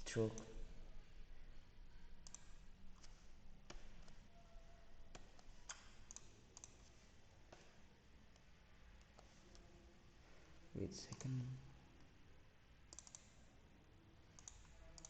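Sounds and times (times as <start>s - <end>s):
faint computer clicks: 2.2s - 4.2s, 5.0s - 9.7s, 11.1s - 11.4s, 12.9s - 13.5s, 14.3s - 15.0s.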